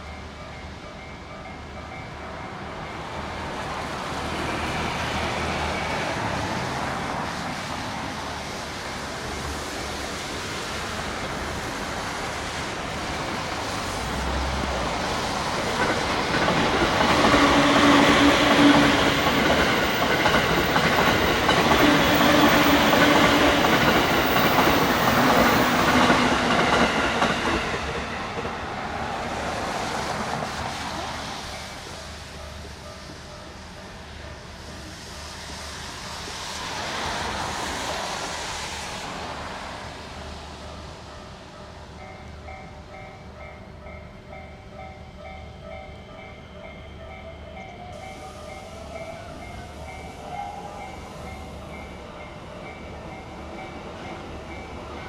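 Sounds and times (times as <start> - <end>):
train wheels clattering over rails: 13.1 - 31.0.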